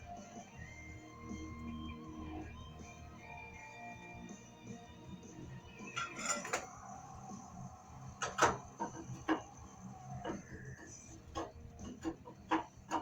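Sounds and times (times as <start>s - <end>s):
metal parts knocking and clinking: 6.0s - 6.8s.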